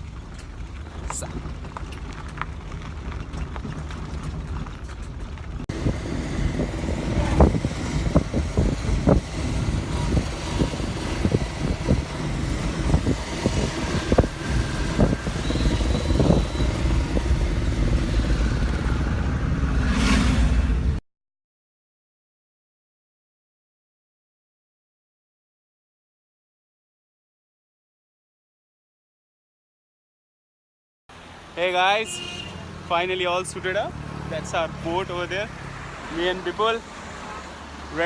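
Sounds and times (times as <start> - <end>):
irregular knocks and rattles: 0.0 - 5.6
vehicle engine low rumble: 0.0 - 21.0.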